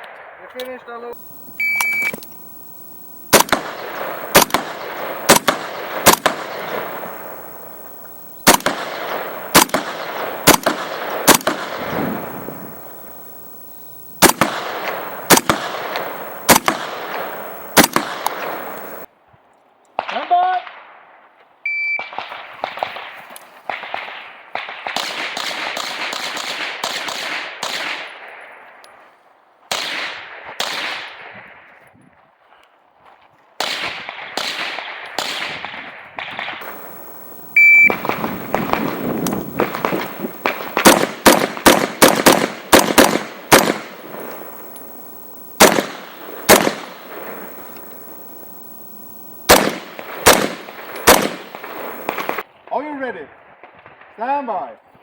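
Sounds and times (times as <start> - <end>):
electronic shot timer beeps: 1.2 - 19.1, 36.6 - 52.4
rapid gunshots: 3.3 - 12.7, 14.2 - 19.0, 22.2 - 28.1, 36.3 - 44.8, 45.5 - 52.4.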